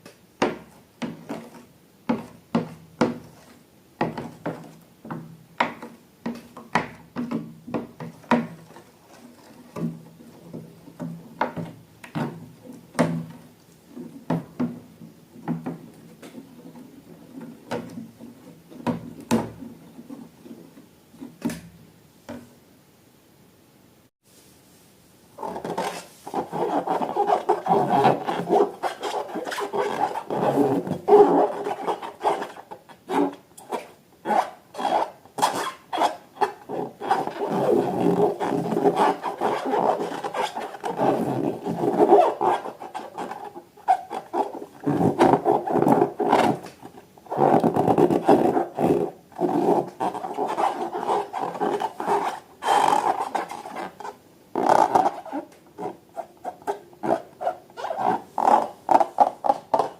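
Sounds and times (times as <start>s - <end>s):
hands rubbing rubber balloon: 25.4s - 59.9s.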